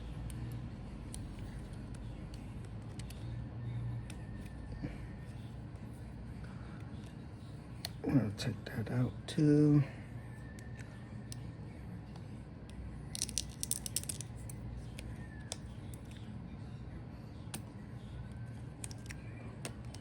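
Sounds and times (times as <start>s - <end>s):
steady low hum: 0.0s - 20.0s
small parts clicking and rattling: 13.1s - 14.6s.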